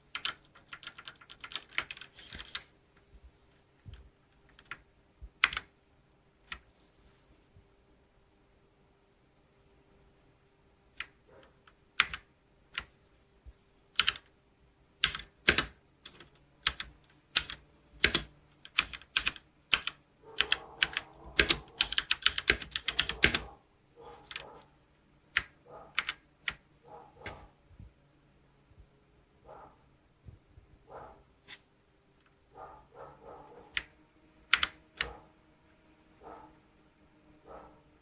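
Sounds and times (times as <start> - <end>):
mechanical keyboard typing: 0.1 - 2.7, 3.9 - 5.7, 10.9 - 13.0, 13.9 - 14.3, 15.0 - 23.5, 24.2 - 24.6, 25.3 - 26.6, 33.6 - 35.2.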